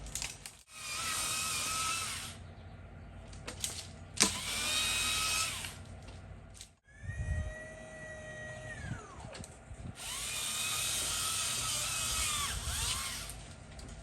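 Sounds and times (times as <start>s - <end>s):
chainsaw running: 0.7s - 2.4s, 4.2s - 5.9s, 10.0s - 13.5s.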